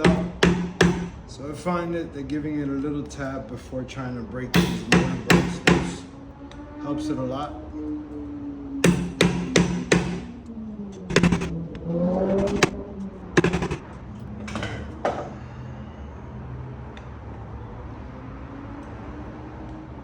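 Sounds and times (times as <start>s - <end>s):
hammer tapping metal: 0.0s - 1.2s, 4.6s - 6.0s, 8.8s - 10.3s, 11.1s - 12.8s, 13.4s - 13.9s.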